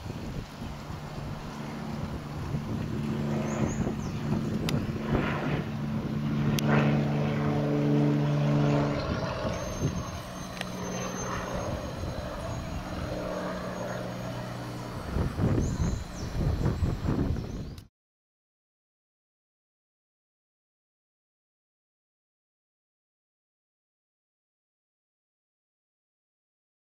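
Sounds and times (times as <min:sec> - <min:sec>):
engine humming: 0:00.0 - 0:17.9.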